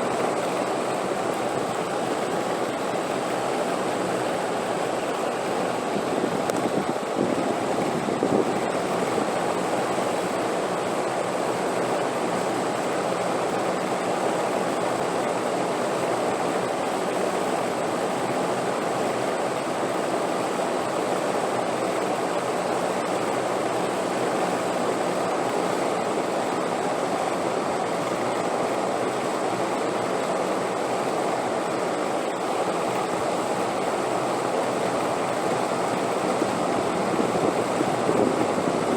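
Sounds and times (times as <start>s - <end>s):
rushing wind: 4.0s - 10.4s, 35.0s - 38.9s.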